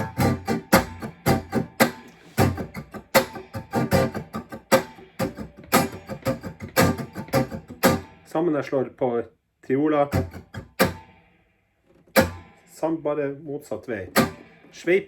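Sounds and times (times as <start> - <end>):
guitar strummed: 0.0 - 8.3, 10.1 - 11.4, 12.0 - 13.0, 14.0 - 15.0.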